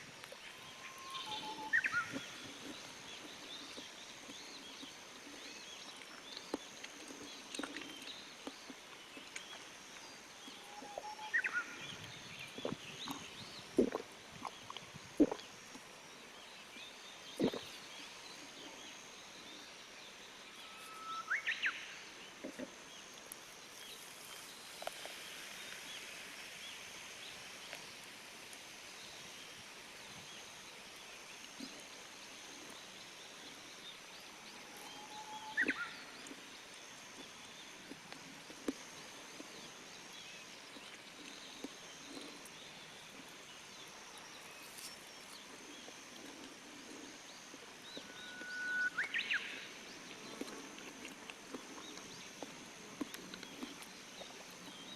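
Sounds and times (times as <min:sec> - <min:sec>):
faint high forest hiss: 0:00.0 - 0:54.9
bird singing whistled phrases: 0:00.8 - 0:02.2, 0:34.8 - 0:36.0, 0:48.1 - 0:49.6.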